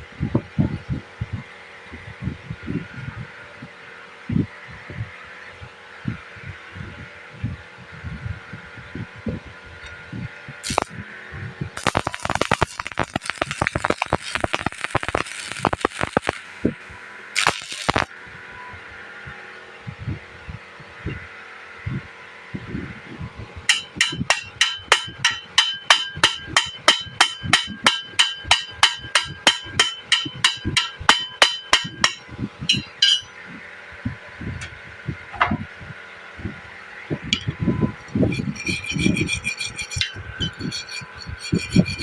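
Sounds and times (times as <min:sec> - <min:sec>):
hammer striking steel: 0:23.7 - 0:33.4, 0:38.3 - 0:42.0
ringing metallic clatter: 0:23.7 - 0:33.4, 0:38.2 - 0:42.0.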